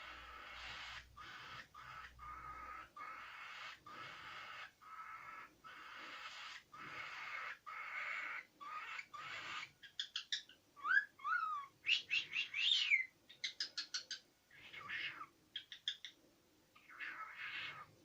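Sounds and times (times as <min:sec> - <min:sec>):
cockatiel chirping: 0:00.0 - 0:17.9
cockatiel whistling: 0:08.7 - 0:14.2.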